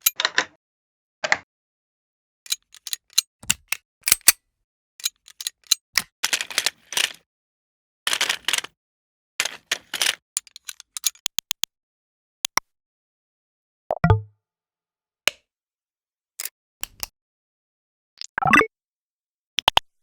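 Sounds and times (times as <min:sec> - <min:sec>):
click sound effects: 0:13.9 - 0:14.3, 0:18.2 - 0:18.7.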